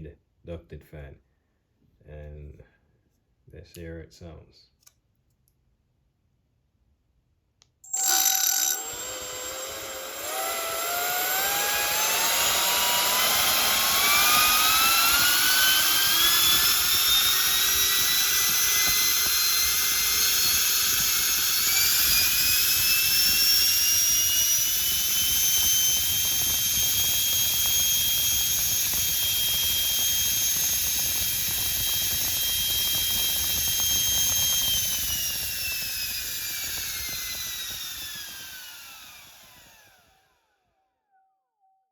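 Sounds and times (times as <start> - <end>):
electric ducted fan whine: 8.8 - 39.9.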